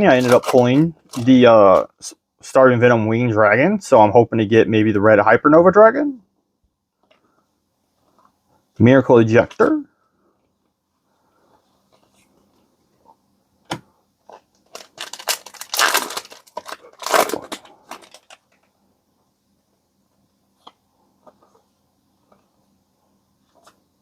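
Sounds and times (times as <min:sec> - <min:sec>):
foil wrapper crinkling and tearing: 0:00.0 - 0:01.8, 0:14.3 - 0:18.7.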